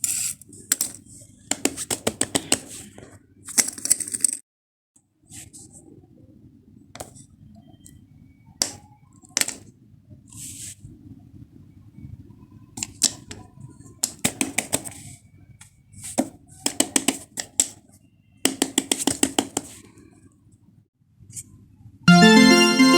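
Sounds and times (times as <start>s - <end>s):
fidget toy clicks and taps: 14.0s - 15.0s, 16.6s - 17.8s, 18.5s - 19.7s.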